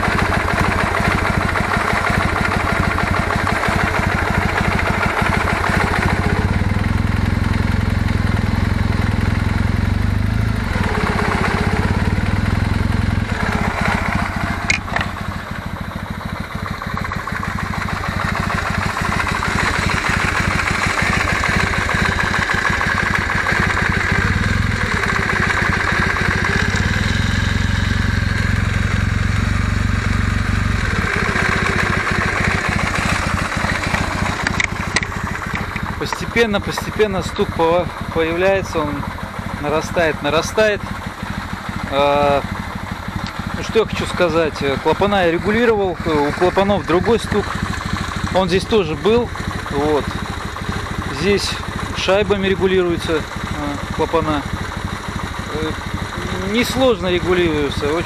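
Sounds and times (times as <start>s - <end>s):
motorcycle engine idling: 0.0s - 58.0s
sharp click: 34.4s - 35.9s.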